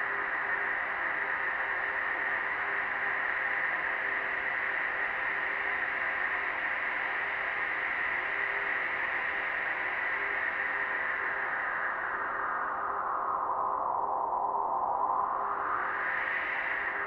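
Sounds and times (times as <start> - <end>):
snowstorm wind hiss: 9.9 - 17.0.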